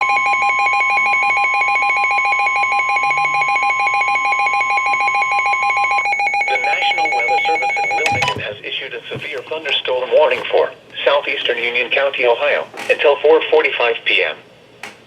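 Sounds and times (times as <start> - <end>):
steady warning alarm tone: 0.0 - 8.6
rapid pulsing alert beep: 2.3 - 8.4
announcer speaking: 6.3 - 14.4.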